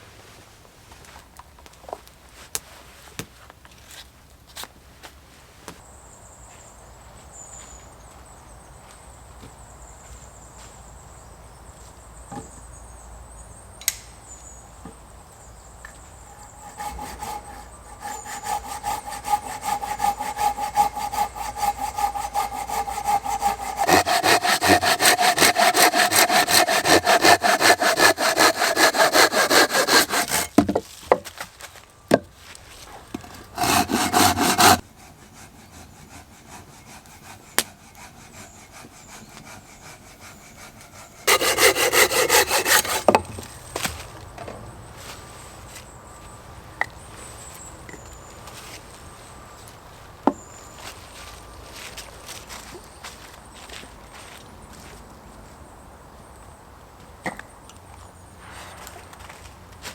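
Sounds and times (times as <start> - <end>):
hand saw cutting wood: 16.3 - 30.8, 32.9 - 43.5.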